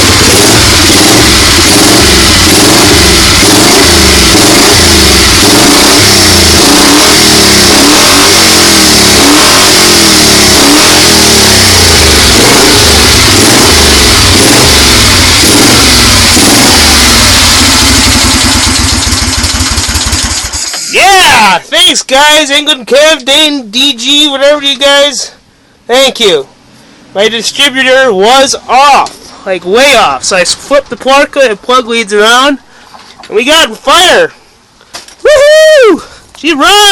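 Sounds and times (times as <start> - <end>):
motorcycle engine revving: 0.0 - 20.9.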